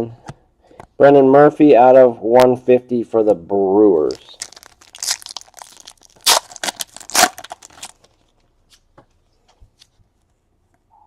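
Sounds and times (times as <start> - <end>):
plastic packaging crinkling: 4.0 - 8.4.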